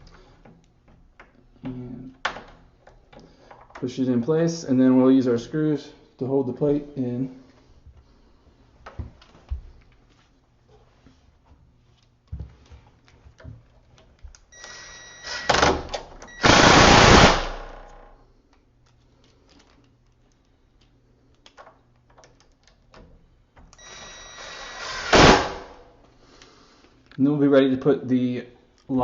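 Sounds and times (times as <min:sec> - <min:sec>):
power drill driving screws: 0:14.6 - 0:17.7, 0:23.8 - 0:25.6
small clicks and handling: 0:18.5 - 0:23.8.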